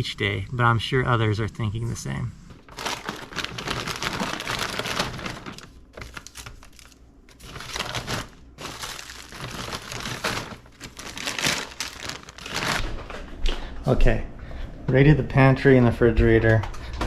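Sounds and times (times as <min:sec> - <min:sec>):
plastic bags rustling: 0:02.5 - 0:13.5.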